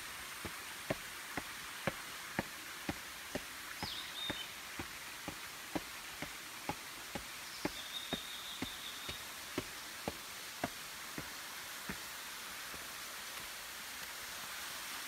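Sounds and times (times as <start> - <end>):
waterfall rushing: 0.0 - 15.0
footsteps walking: 0.4 - 12.1.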